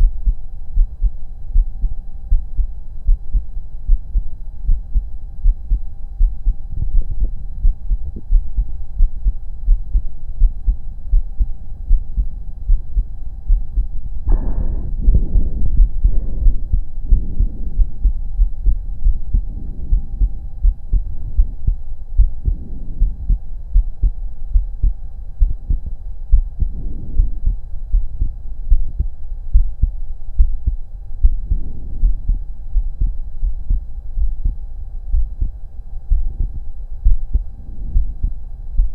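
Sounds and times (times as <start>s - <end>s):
faint hum: 0.0s - 38.9s
heartbeat thuds: 0.0s - 38.9s
breathing through chest: 14.3s - 18.3s.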